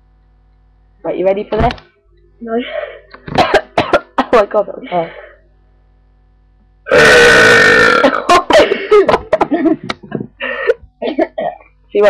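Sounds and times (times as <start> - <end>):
woman burping loudly: 6.9 - 8.9.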